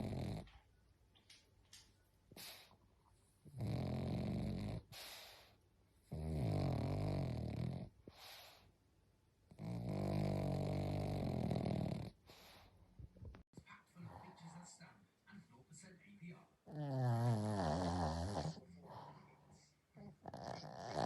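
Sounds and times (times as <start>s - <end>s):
dog snoring: 0.0s - 0.6s, 3.4s - 8.6s, 9.5s - 12.6s, 16.6s - 21.0s.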